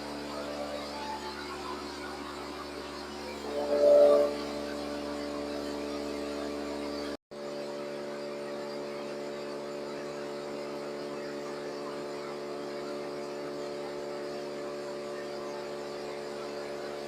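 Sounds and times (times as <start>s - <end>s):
milling machine humming: 0.0s - 7.2s.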